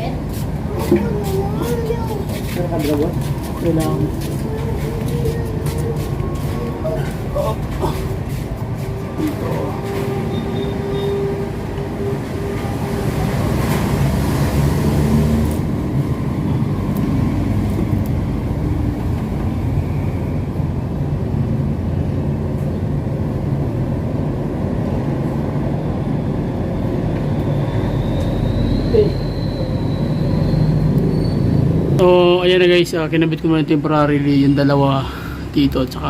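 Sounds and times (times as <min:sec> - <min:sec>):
road traffic rumble: 0:00.0 - 0:36.0
thin high squeal: 0:08.9 - 0:13.0, 0:27.5 - 0:31.8.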